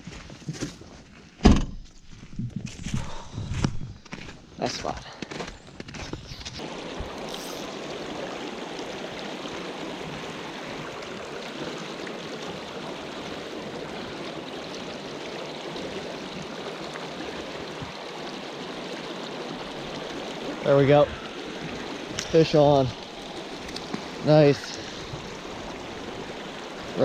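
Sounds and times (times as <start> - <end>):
creek water rushing over rocks: 6.6 - 27.0.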